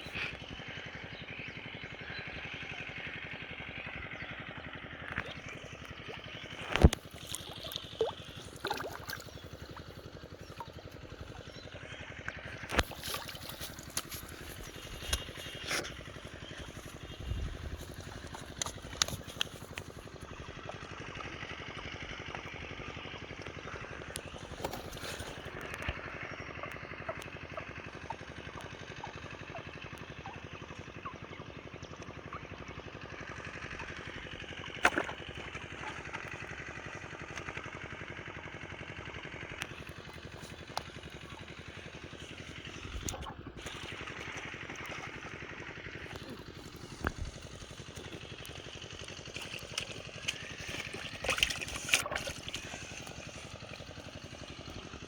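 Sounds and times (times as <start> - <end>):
small engine running: 0.0 - 55.0
water trickling: 5.3 - 11.6, 46.0 - 54.4.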